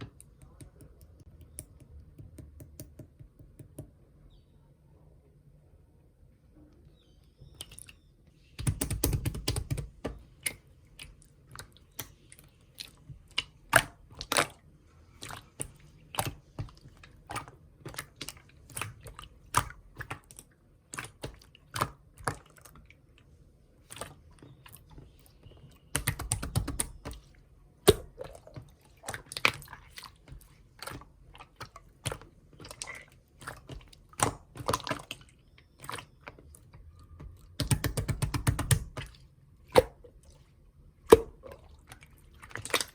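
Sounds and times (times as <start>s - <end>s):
slime squishing: 7.3s - 42.9s
slime clicking and popping: 25.9s - 27.2s, 37.5s - 39.1s.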